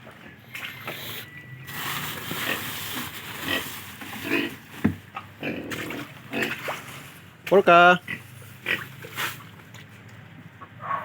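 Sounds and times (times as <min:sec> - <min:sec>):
pig grunting: 0:03.4 - 0:04.6, 0:05.4 - 0:06.6, 0:08.0 - 0:09.0.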